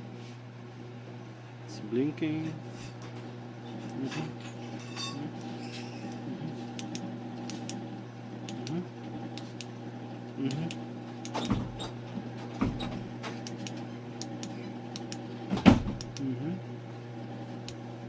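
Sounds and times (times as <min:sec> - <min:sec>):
low electrical hum: 0:00.0 - 0:18.0
small clicks: 0:06.1 - 0:07.8, 0:13.4 - 0:15.2.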